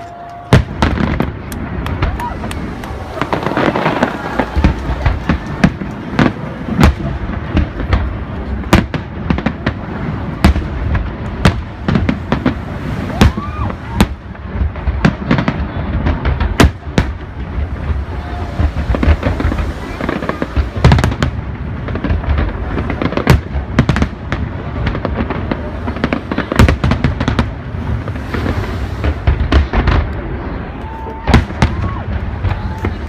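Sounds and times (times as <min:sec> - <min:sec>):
fireworks bursting with sharp bangs: 0:00.0 - 0:33.0
low rumble of booms: 0:00.5 - 0:33.0.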